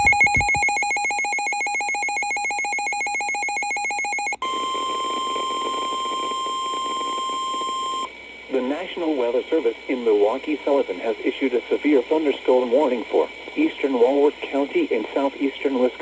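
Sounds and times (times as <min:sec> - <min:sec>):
pulsing warbling electronic alarm: 0:00.0 - 0:04.4
steady warning alarm tone: 0:00.0 - 0:08.1.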